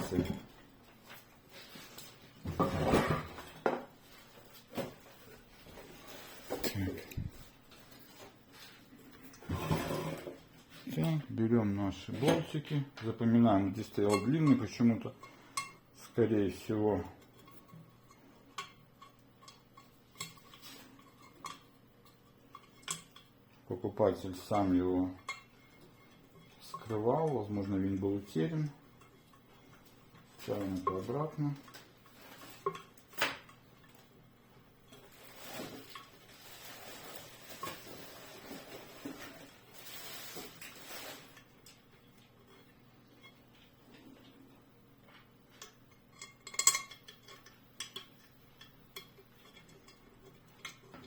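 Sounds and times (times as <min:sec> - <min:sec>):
scraping and rustling of parts: 0:00.0 - 0:11.2, 0:13.8 - 0:23.4, 0:24.2 - 0:34.2, 0:34.8 - 0:51.0.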